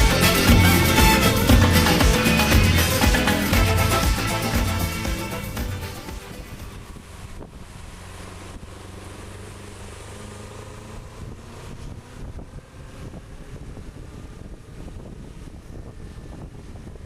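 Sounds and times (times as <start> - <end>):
motorcycle engine running: 0.0 - 17.0
wind buffeting microphone: 5.9 - 9.2, 10.7 - 17.0.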